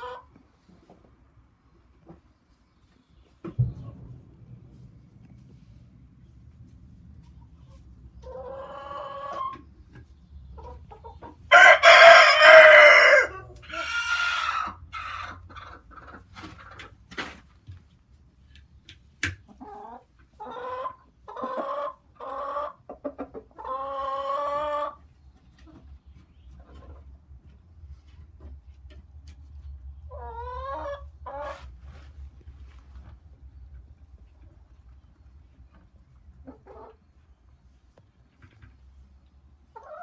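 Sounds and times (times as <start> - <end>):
chickens clucking: 0.0 - 4.1, 6.1 - 40.0
chicken crowing: 11.5 - 15.4.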